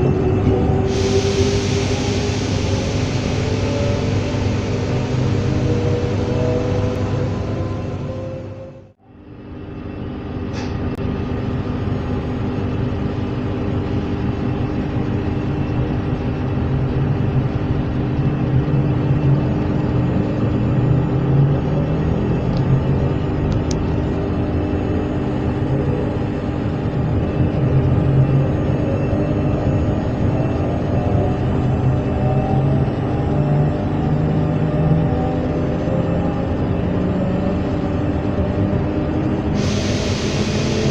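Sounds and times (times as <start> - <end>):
electric train running: 0.1 - 8.9, 26.9 - 40.9.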